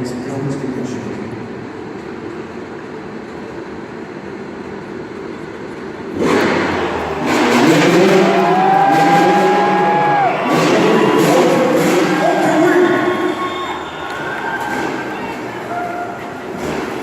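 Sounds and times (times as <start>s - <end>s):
motorcycle engine revving: 6.0s - 17.0s
crowd noise: 6.1s - 17.0s.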